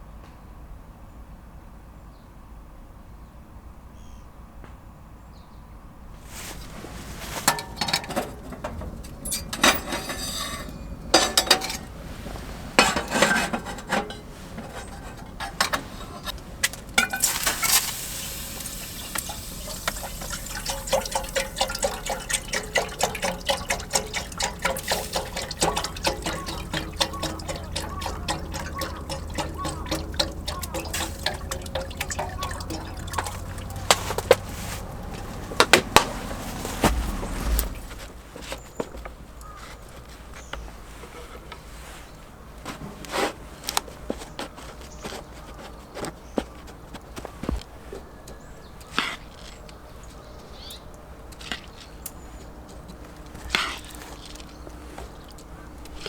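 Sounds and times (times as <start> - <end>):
fine crackles: 6.2 - 7.9, 33.8 - 48.0
liquid sounds: 6.2 - 38.2
pots and utensils clinking: 6.2 - 38.8.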